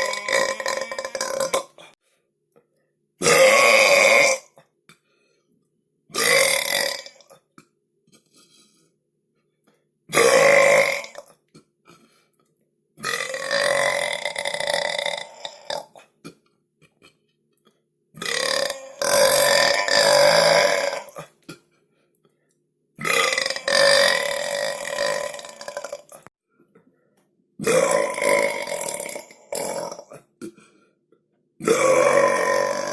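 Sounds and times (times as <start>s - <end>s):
person burping: 0.0s - 2.0s, 3.2s - 4.7s, 6.1s - 8.8s, 10.1s - 12.1s, 13.0s - 21.7s, 23.0s - 26.3s, 27.6s - 30.7s, 31.6s - 32.9s.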